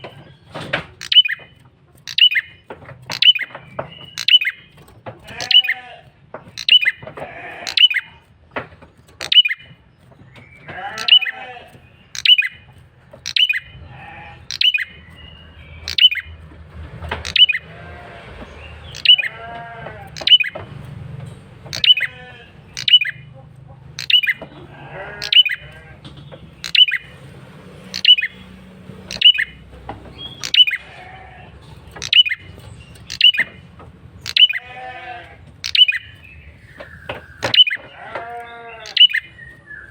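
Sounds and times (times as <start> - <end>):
bird sharp call notes: 12.2 - 12.6, 18.9 - 19.4, 20.2 - 20.6, 21.7 - 23.3, 26.6 - 27.1, 27.9 - 28.4, 29.1 - 29.6, 30.2 - 30.9, 34.2 - 34.6, 38.7 - 39.9.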